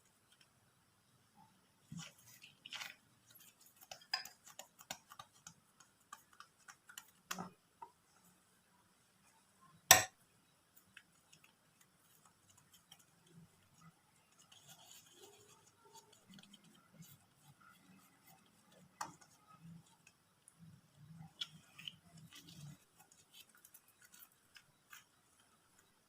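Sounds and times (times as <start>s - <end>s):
kitchen clicks and taps: 3.8s - 8.0s, 9.9s - 10.2s.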